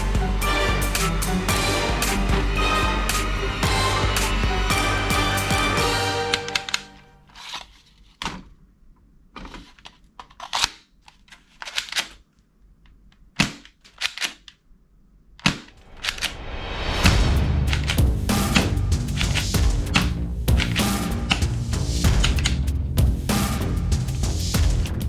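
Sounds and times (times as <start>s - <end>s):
music: 0.0s - 7.2s, 16.6s - 25.0s.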